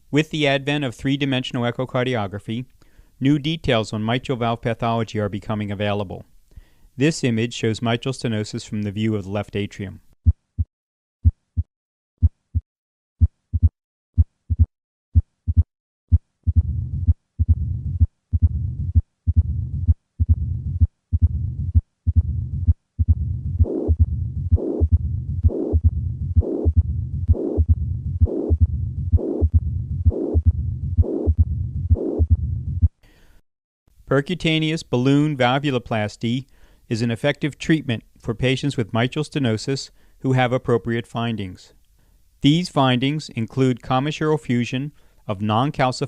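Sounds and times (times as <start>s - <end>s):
heartbeat thumps: 10.2s - 33.0s.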